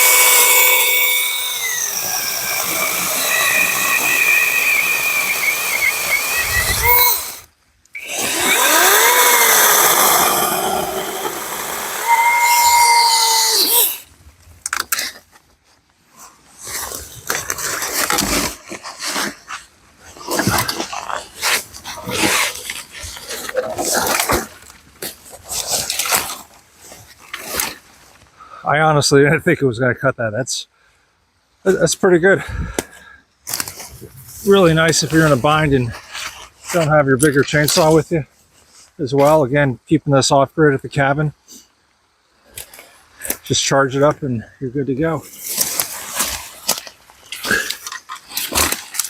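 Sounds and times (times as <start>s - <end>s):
electric mini chainsaw cutting wood: 0.0s - 14.0s.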